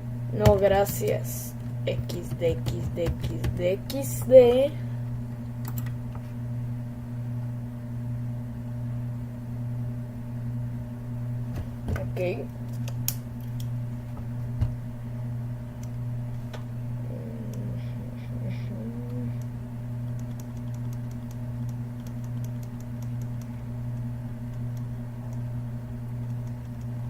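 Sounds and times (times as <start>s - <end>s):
low electrical hum: 0.0s - 27.0s
keyboard and mouse clicks: 5.6s - 6.0s, 20.1s - 25.4s.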